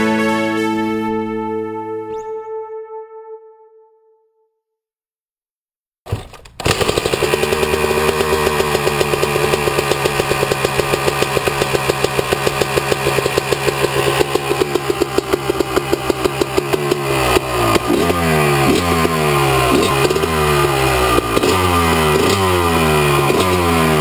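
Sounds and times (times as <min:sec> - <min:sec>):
dirt bike engine idling: 0:06.7 - 0:24.0.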